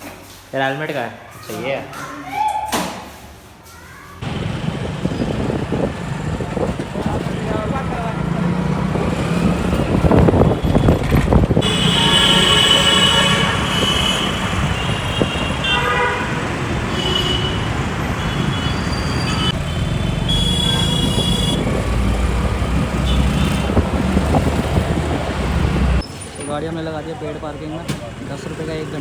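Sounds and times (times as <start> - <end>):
low traffic rumble: 4.2 - 29.0
vehicle horns honking: 11.6 - 21.8, 22.9 - 23.9.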